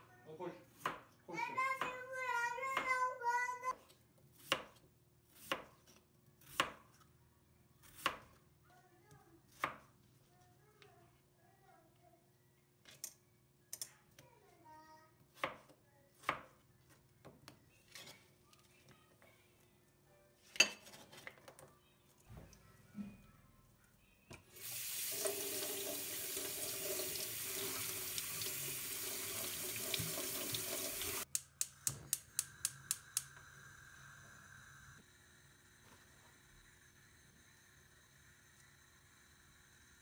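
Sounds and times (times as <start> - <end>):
water tap running into sink: 24.6 - 31.3.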